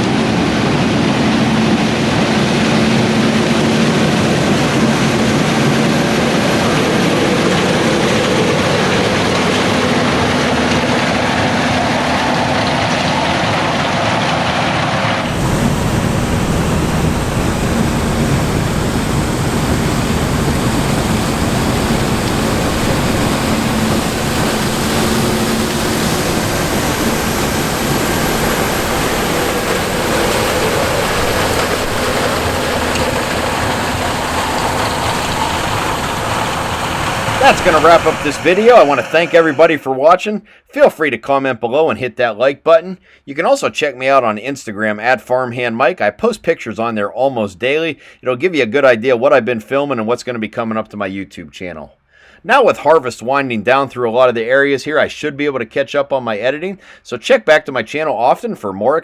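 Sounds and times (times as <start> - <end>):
combine harvester drone: 0.0 - 39.8.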